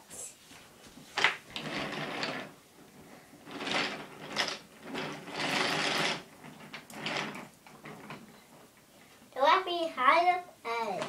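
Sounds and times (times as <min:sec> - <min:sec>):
toy train rattling whir: 0:01.6 - 0:02.5, 0:03.4 - 0:08.2.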